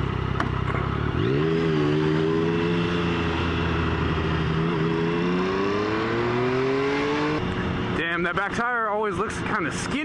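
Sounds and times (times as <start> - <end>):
motorcycle engine accelerating: 0.0 - 8.0.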